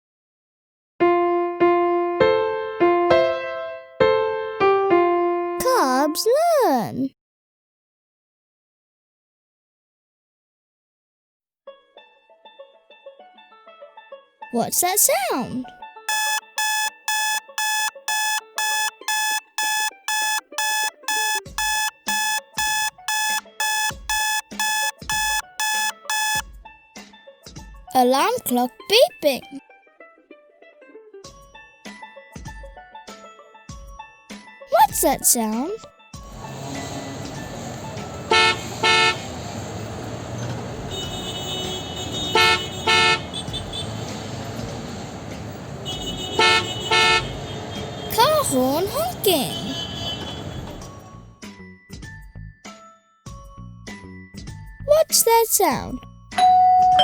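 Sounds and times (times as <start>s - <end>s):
alarm clock beeping: 16.1s - 26.4s
street noise: 36.3s - 51.1s.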